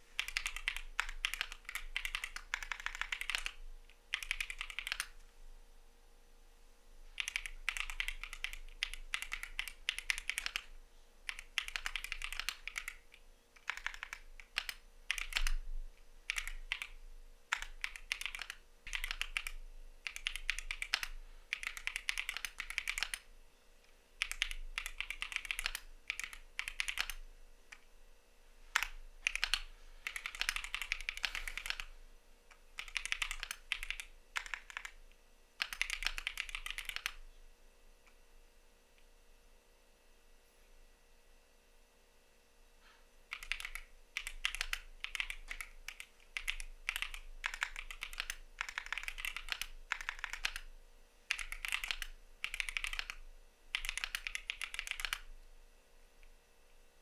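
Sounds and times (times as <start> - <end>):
mechanical keyboard typing: 0.2 - 5.2, 7.2 - 23.3, 24.2 - 27.9, 28.7 - 31.9, 32.5 - 35.0, 35.6 - 37.2, 43.3 - 50.7, 51.3 - 55.3.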